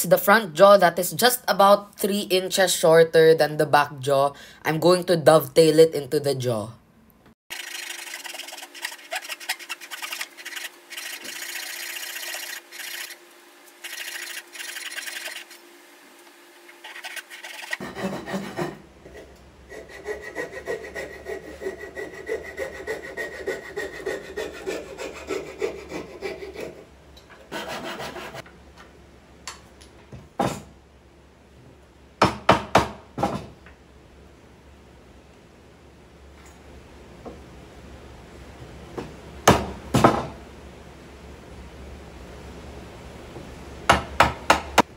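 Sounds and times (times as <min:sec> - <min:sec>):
hand saw cutting wood: 0:07.5 - 0:28.5.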